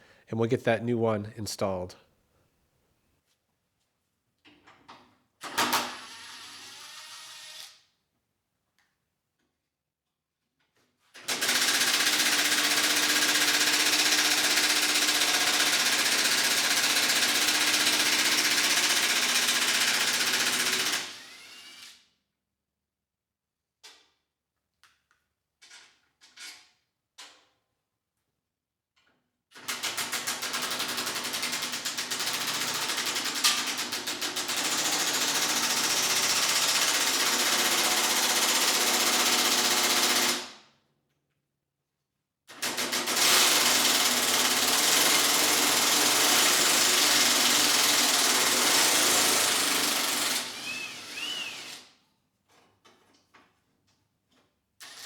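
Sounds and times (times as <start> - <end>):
power tool running: 43.2 - 51.9.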